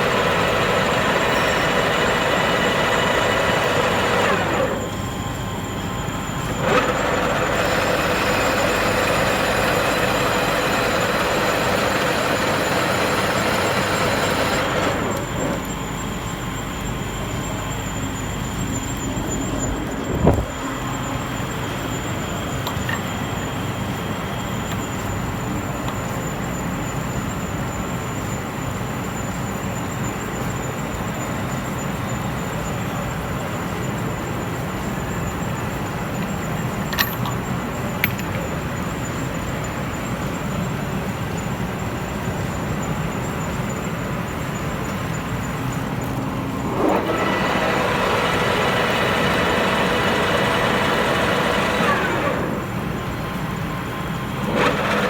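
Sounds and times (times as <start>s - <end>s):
lathe running: 0.0s - 26.6s, 44.4s - 55.0s.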